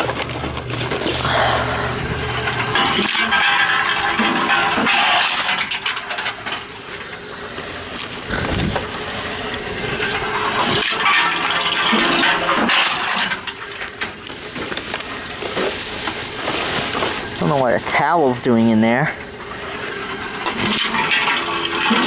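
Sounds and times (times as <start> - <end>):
cans rattling: 0.0 - 22.0
reverse vending machine motor hum: 0.0 - 22.0
metallic clanks of cans: 2.1 - 7.2, 9.5 - 17.4, 20.2 - 22.0.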